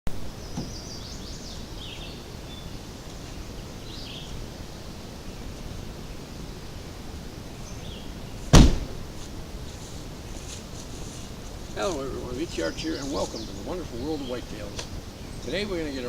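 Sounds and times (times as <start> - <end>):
bird chirps: 0.4 - 2.8, 12.4 - 16.0.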